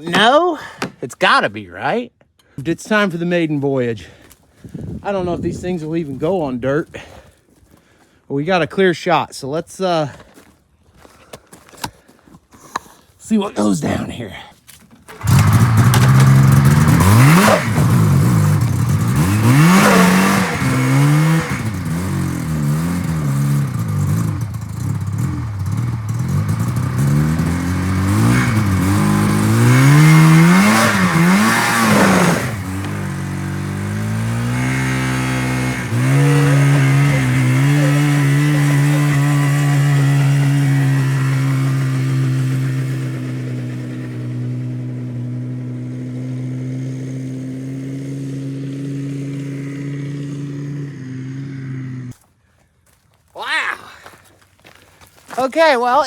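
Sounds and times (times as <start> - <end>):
clutch popping and banging: 14.8 - 50.8
snowmobile engine revving: 15.1 - 52.2.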